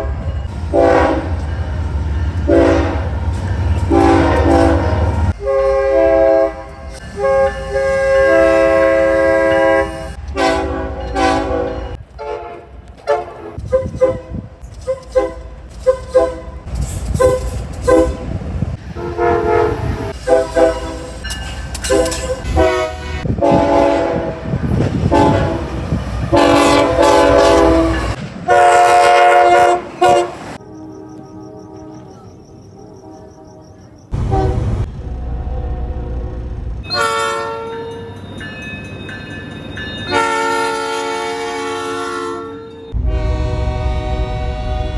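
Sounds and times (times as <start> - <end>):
train air horn blasts: 0.0 - 1.4, 2.4 - 3.2, 3.9 - 21.2, 21.8 - 34.9, 35.5 - 38.1, 40.1 - 44.9
train rumbling: 0.0 - 44.9.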